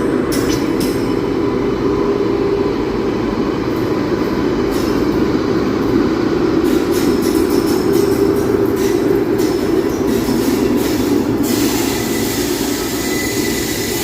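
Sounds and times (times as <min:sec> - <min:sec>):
train rumbling past: 0:00.0 - 0:14.0
wheels clicking over rail joints: 0:06.6 - 0:11.7.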